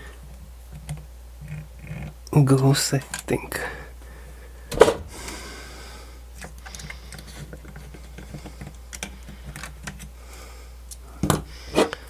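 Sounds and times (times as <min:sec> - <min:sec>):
steady low hum: 0:00.0 - 0:12.0
small parts and tools clicking: 0:06.4 - 0:10.1.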